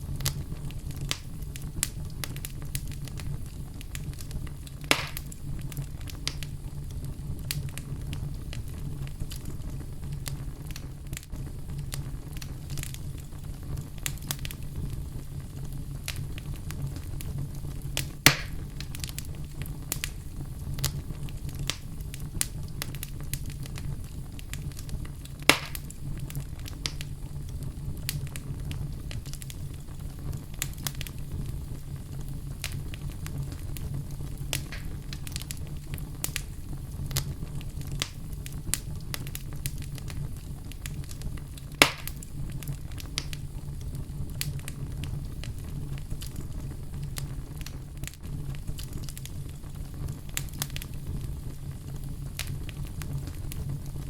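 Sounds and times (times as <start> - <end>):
fireplace fire crackling: 0.0 - 54.0
loud fire pops: 0.0 - 54.0.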